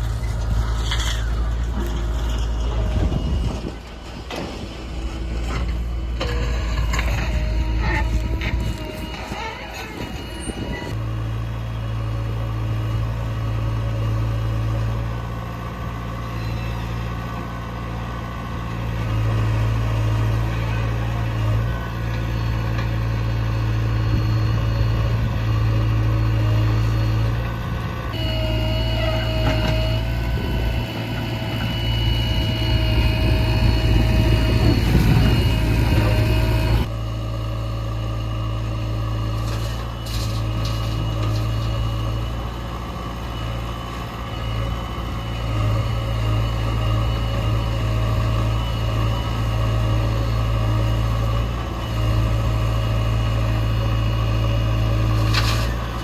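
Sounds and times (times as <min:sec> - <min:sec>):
diesel engine running: 0:00.0 - 0:56.0
steady whine: 0:27.8 - 0:36.9.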